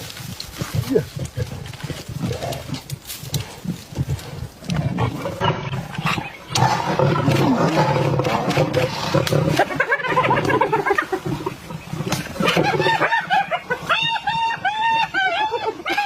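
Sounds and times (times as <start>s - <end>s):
big cats roaring: 1.8s - 13.9s.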